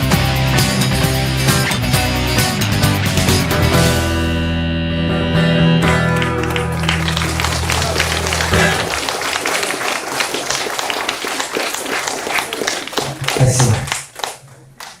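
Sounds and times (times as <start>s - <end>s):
audience applauding: 5.8s - 15.0s.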